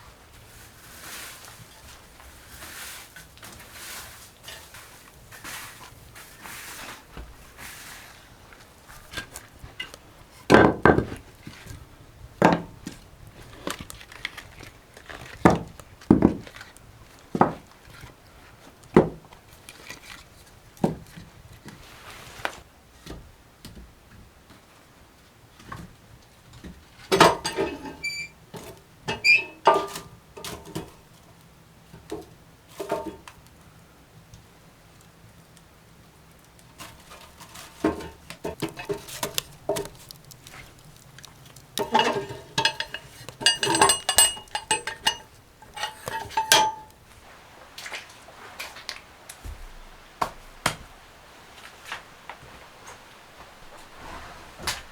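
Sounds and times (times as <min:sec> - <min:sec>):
wooden knocks and thuds: 0:10.5 - 0:11.6, 0:15.4 - 0:16.7, 0:19.0 - 0:19.3, 0:49.4 - 0:51.0.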